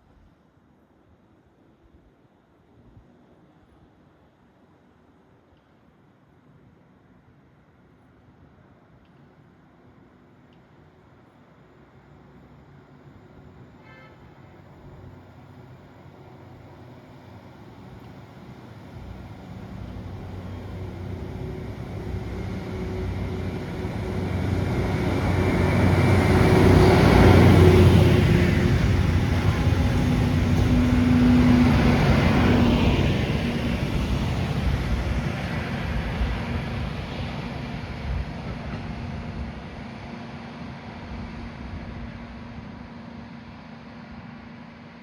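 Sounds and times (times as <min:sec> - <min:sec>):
rail grinding train passing: 0:11.9 - 0:44.7
diesel engines running: 0:18.0 - 0:39.0.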